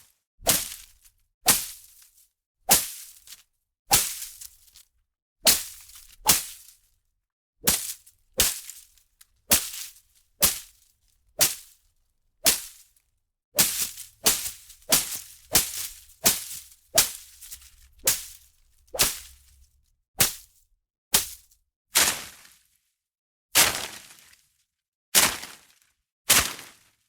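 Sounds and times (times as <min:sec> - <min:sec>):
plants being slashed swishing: 0:00.5 - 0:00.8, 0:07.6 - 0:08.8, 0:09.5 - 0:10.7, 0:11.4 - 0:11.6, 0:12.4 - 0:12.8, 0:13.6 - 0:19.4, 0:20.2 - 0:20.5.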